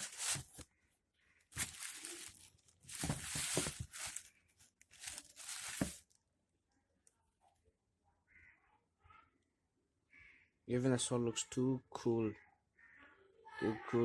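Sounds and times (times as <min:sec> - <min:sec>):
sneakers rustling and crinkling: 0:00.0 - 0:00.7, 0:01.5 - 0:06.2.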